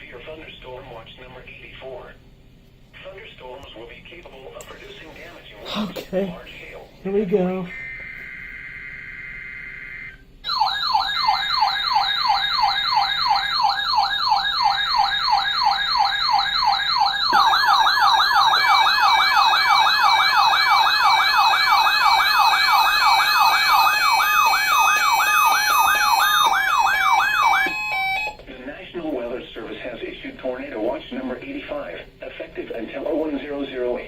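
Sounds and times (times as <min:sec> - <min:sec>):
electronic siren yelping: 0:07.7 - 0:28.4
on-off beeping tone: 0:27.3 - 0:28.4.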